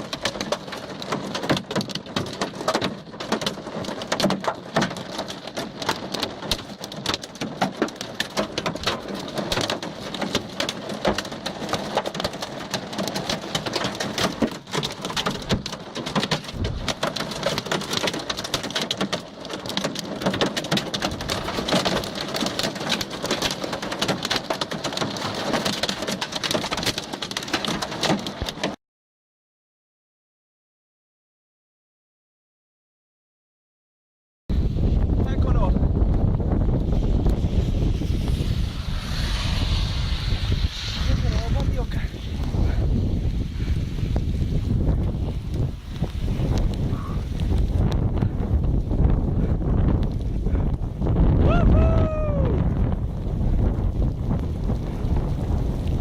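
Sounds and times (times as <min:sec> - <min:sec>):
hailstones rattling on hard surfaces: 0:00.0 - 0:28.8
low rumble: 0:34.5 - 0:56.0.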